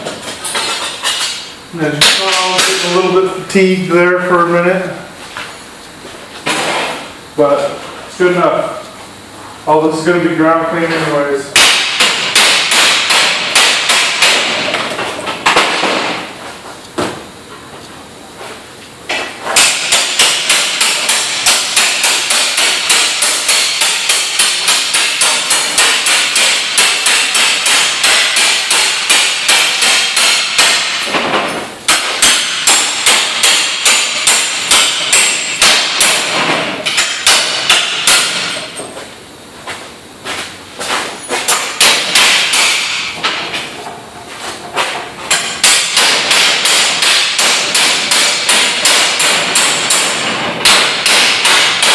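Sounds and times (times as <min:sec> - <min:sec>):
hammer striking steel plate: 0:02.0 - 0:03.1, 0:11.6 - 0:14.9, 0:19.1 - 0:38.8, 0:41.4 - 0:43.6, 0:44.8 - 0:51.9.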